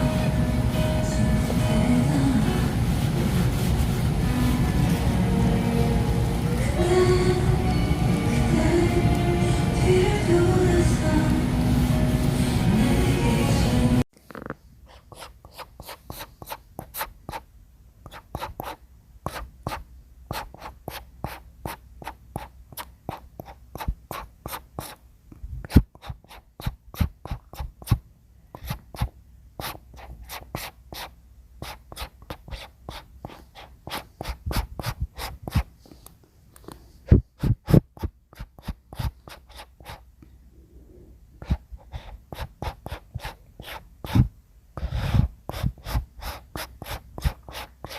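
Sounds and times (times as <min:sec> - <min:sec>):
paintbrush stroking wood: 0:18.1 - 0:22.5, 0:28.6 - 0:35.8, 0:37.4 - 0:40.0, 0:41.4 - 0:47.9.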